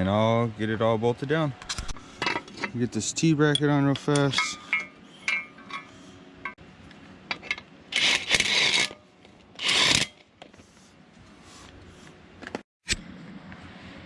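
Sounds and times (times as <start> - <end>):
ratchet wrench rasping: 7.9 - 9.0, 9.6 - 10.2.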